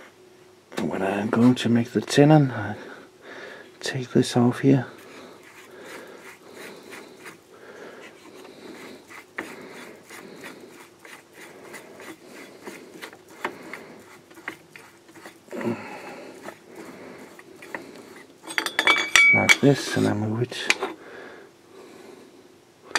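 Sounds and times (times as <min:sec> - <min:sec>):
hands rubbing and scraping: 0:04.8 - 0:18.5.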